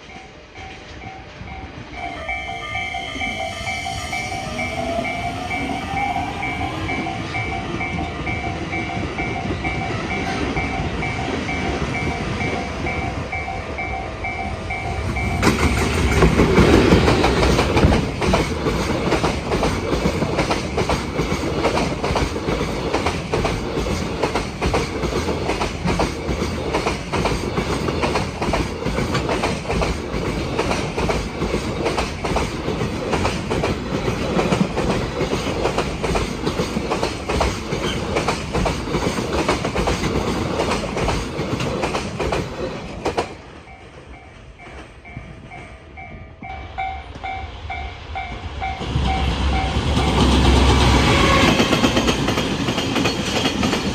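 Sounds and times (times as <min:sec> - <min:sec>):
level crossing warning bell: 0:00.0 - 0:18.3
train wheels clattering over rail joints: 0:14.7 - 0:43.4, 0:49.8 - 0:53.9.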